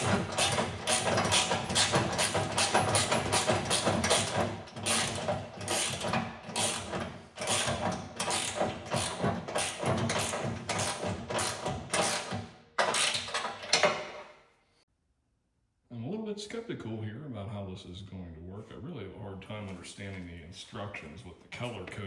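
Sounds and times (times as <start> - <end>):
ratchet wrench clicking: 0.0 - 14.0.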